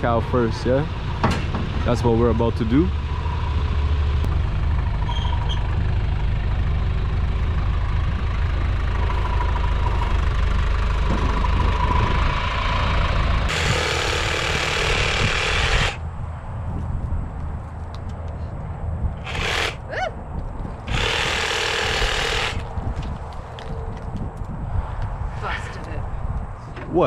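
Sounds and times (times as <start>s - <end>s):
tractor engine idling: 0.0s - 16.0s
loud hiss: 19.2s - 19.8s.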